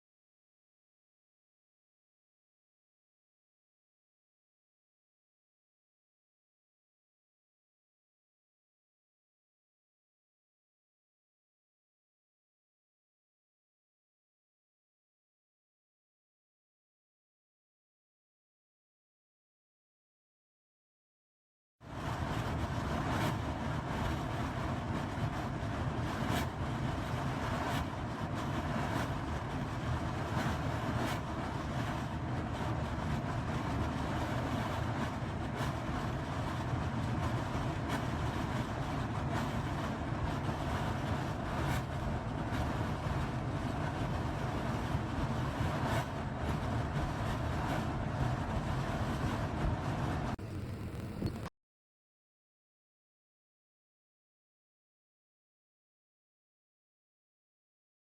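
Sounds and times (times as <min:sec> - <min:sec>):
low mechanical rumble: 0:21.9 - 0:51.5
light clicks: 0:50.4 - 0:51.5.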